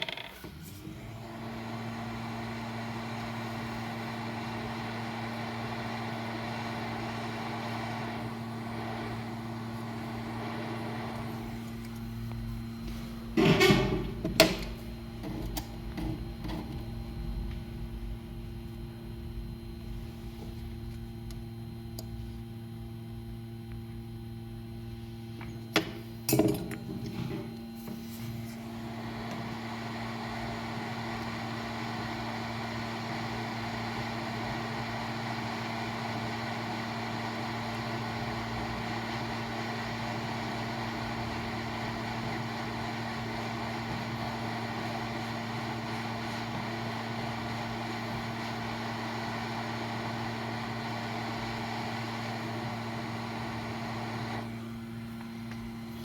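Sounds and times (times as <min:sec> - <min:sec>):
rushing blower noise: 0:00.8 - 0:12.0, 0:28.5 - 0:54.8
constant electrical hum: 0:03.1 - 0:29.6.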